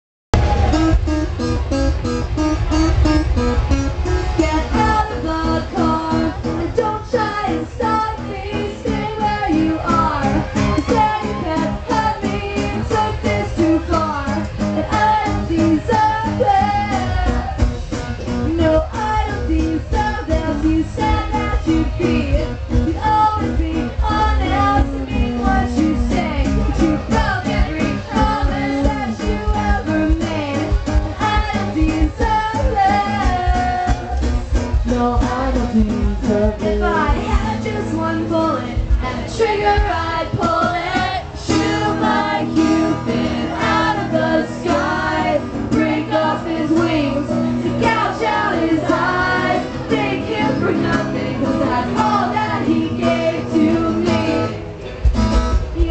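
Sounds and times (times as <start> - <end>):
bass guitar: 0.3 - 55.9
drums keeping a beat: 0.3 - 55.9
electric guitars: 0.4 - 55.9
person singing lead vocal: 4.1 - 17.6, 18.4 - 54.7.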